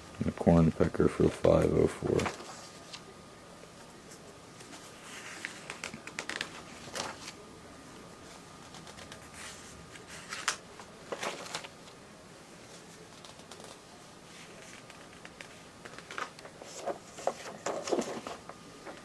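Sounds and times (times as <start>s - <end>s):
paper pages rustling: 2.0s - 3.0s, 4.1s - 7.4s, 8.6s - 12.0s, 12.6s - 19.0s.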